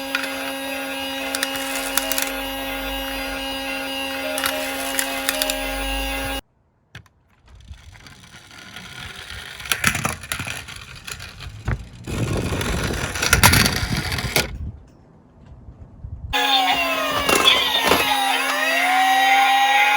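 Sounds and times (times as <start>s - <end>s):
toy car rattling on track: 0.0s - 6.3s, 7.3s - 14.6s, 16.4s - 19.9s
scattered clicks: 0.0s - 6.4s
steady humming tone: 0.0s - 6.4s, 16.4s - 19.9s.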